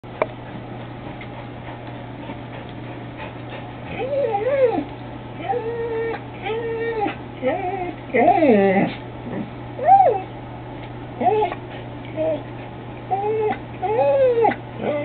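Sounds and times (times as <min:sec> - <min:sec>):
low steady hum: 0:00.0 - 0:15.0
animal whining: 0:03.8 - 0:10.3, 0:11.2 - 0:15.0.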